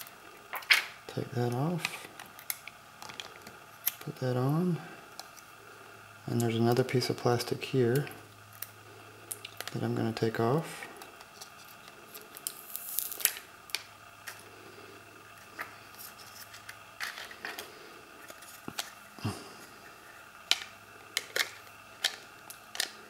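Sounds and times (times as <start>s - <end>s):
film scraping and crinkling: 1.5s - 4.2s, 10.7s - 14.5s, 15.3s - 23.0s.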